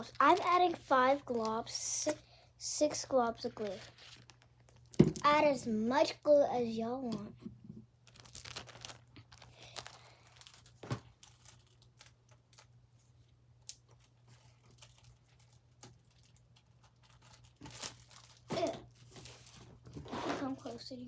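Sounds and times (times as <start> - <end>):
plastic bag crinkling: 0.0 - 1.7, 3.5 - 5.2, 8.0 - 20.8.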